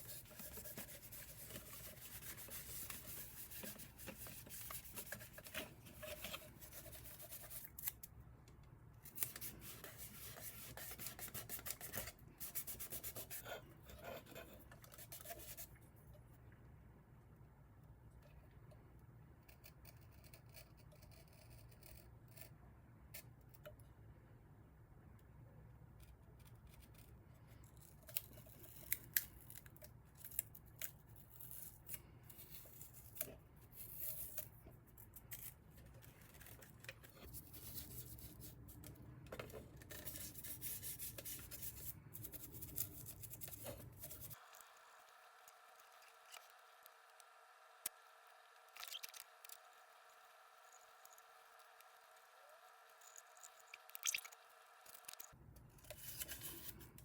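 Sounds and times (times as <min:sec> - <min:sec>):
scratchy rubbing on plastic: 0:00.0 - 0:07.9, 0:09.2 - 0:15.7.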